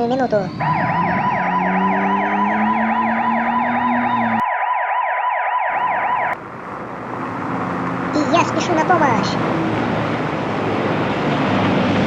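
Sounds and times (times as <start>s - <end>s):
electronic toy siren wailing: 0.5s - 6.4s.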